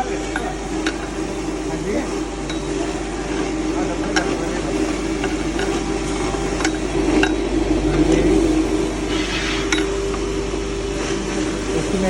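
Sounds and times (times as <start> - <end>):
feed grinder humming: 0.0 - 12.0
grain clinking on metal: 0.2 - 10.5.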